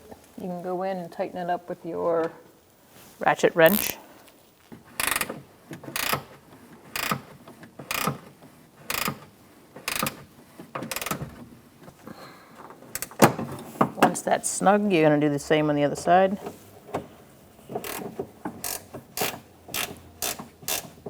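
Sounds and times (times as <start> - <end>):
ratchet wrench clicking: 7.9 - 8.2, 8.9 - 9.2, 18.6 - 20.9.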